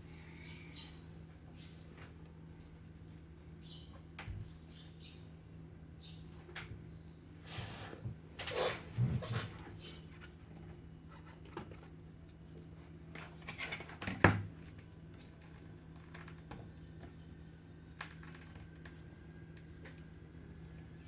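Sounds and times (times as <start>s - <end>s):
steady low hum: 0.0s - 13.8s.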